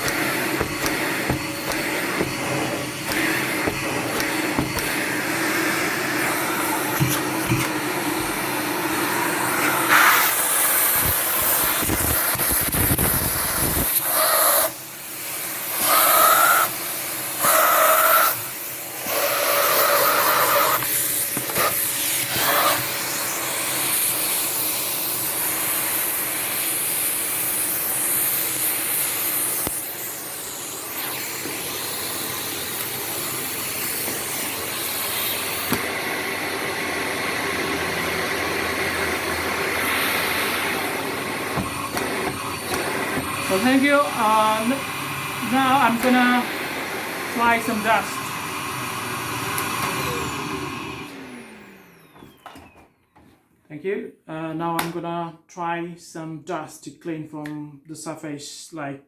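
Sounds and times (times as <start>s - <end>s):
vacuum cleaner running: 0.0s - 53.0s.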